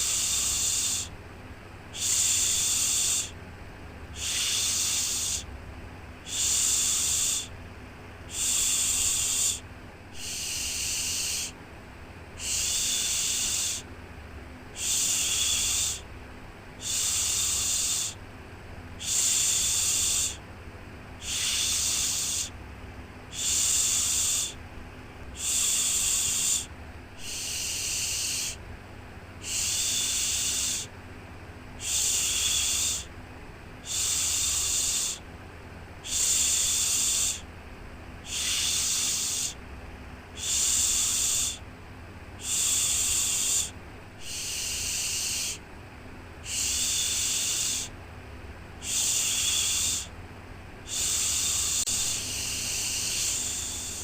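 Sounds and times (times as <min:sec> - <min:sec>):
person shushing: 0:10.2 - 0:11.6, 0:21.2 - 0:22.5, 0:25.4 - 0:28.6, 0:29.4 - 0:30.9, 0:38.2 - 0:39.6, 0:42.4 - 0:45.6, 0:46.4 - 0:47.9, 0:48.8 - 0:50.1, 0:50.9 - 0:54.0.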